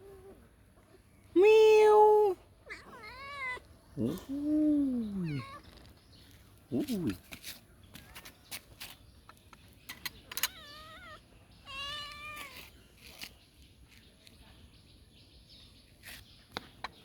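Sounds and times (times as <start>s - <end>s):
kitten meowing: 10.5s - 12.6s.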